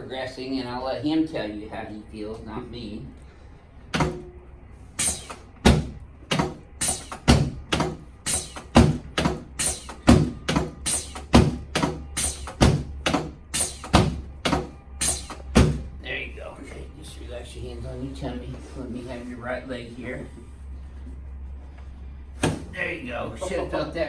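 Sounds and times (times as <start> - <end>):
sharp percussive impacts on body: 3.9 - 4.3, 5.0 - 16.0.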